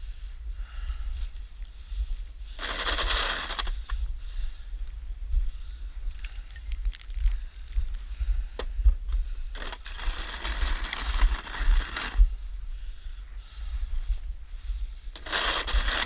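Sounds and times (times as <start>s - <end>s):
wind rumble on microphone: 0.0s - 16.0s
shovel scraping: 2.6s - 3.8s, 9.6s - 12.2s, 15.2s - 16.0s
snow shovel crunching snow: 2.6s - 3.9s, 9.6s - 12.2s, 15.1s - 16.0s.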